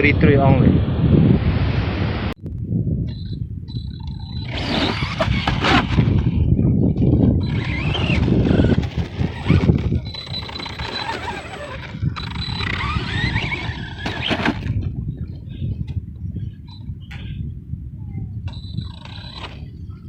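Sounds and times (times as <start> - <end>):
steady low rumble: 0.0 - 18.9
toy truck electric motor whining: 3.2 - 6.3, 7.4 - 14.6, 18.5 - 19.7.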